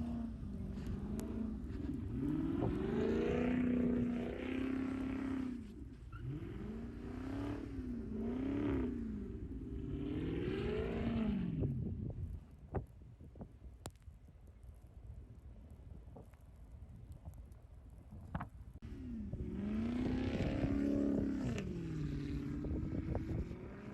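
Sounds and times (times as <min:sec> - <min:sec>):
car engine revving: 0:00.0 - 0:11.8, 0:18.8 - 0:23.9.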